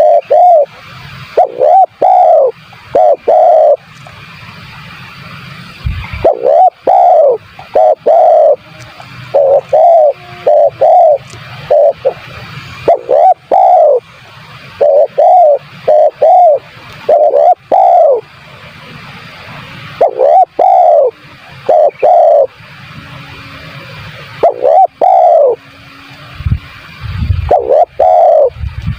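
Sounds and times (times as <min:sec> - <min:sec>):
dove cooing: 0:00.0 - 0:00.7, 0:01.4 - 0:03.9, 0:06.0 - 0:14.1, 0:14.7 - 0:18.4, 0:20.0 - 0:26.3, 0:27.4 - 0:28.6
faint steady hiss: 0:00.0 - 0:28.9.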